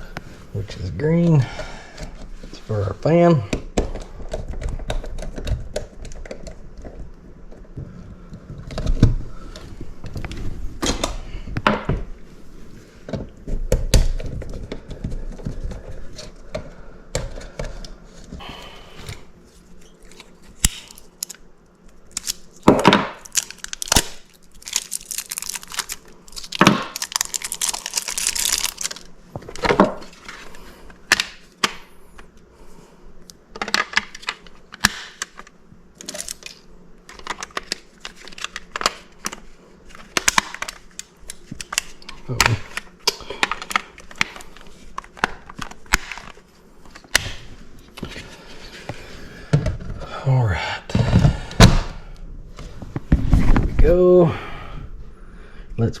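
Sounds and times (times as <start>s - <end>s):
rustling and scraping: 52.5s - 53.9s.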